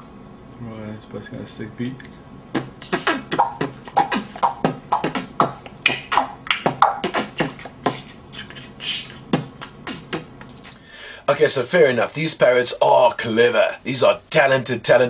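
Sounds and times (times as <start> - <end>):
parrot beatboxing clicks and pops: 2.6 - 10.8.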